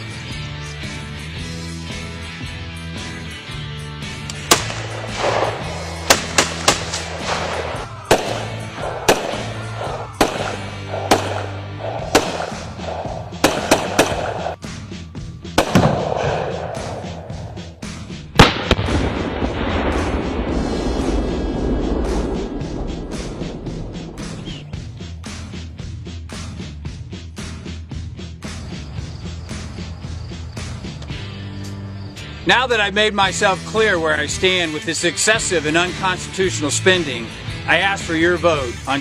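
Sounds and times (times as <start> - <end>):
background music: 0.0 - 39.0
rifle shots: 4.3 - 14.6, 15.6 - 17.4, 18.4 - 20.5.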